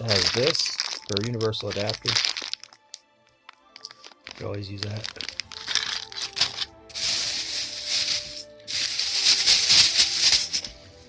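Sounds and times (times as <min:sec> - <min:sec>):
faint background music: 0:00.0 - 0:11.0
hissy rustling of items: 0:03.8 - 0:11.0.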